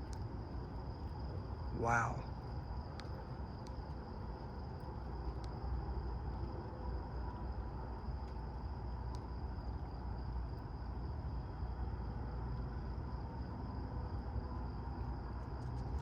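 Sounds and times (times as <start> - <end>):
high insect drone: 0.0 - 16.0
faint click: 2.9 - 3.8.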